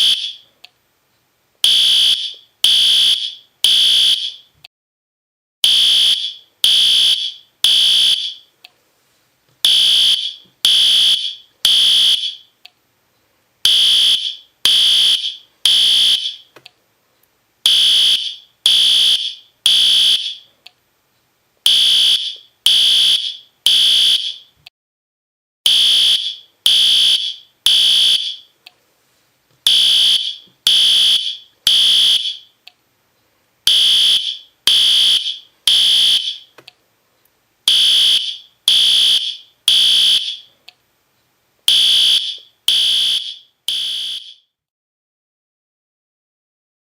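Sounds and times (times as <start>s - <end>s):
fire alarm horn blasts: 0.0s - 0.4s, 1.6s - 4.5s, 5.6s - 8.5s, 9.6s - 12.5s, 13.6s - 16.5s, 17.6s - 20.5s, 21.7s - 24.5s, 25.6s - 28.5s, 29.7s - 32.5s, 33.7s - 36.5s, 37.7s - 40.5s, 41.7s - 44.5s.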